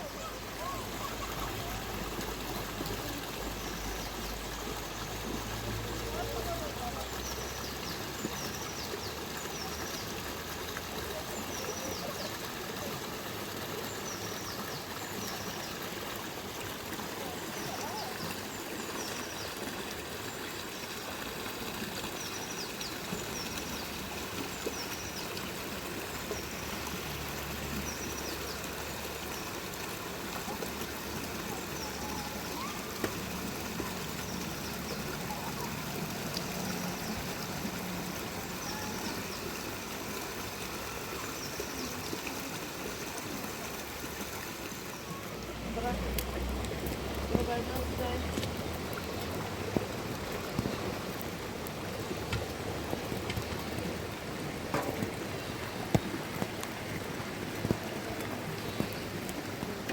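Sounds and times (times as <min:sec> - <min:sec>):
rain hissing: 0:29.7 - 0:59.9.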